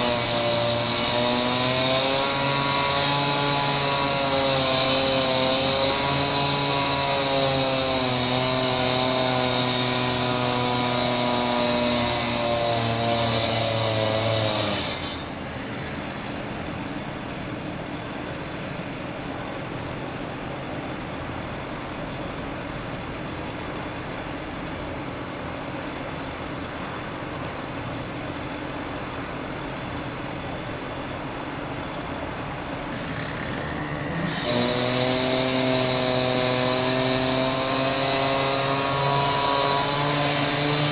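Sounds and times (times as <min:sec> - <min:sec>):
concrete saw cutting stone: 0:00.0 - 0:16.2, 0:32.8 - 0:40.9.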